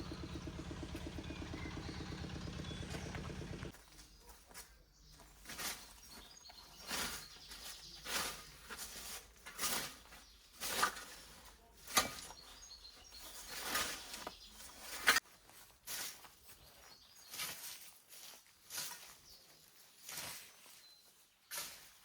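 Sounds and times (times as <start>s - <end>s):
faint bird chirps: 0.0s - 8.8s, 11.6s - 15.2s
scythe swishing through grass: 15.9s - 16.3s, 17.2s - 19.2s, 19.9s - 22.0s.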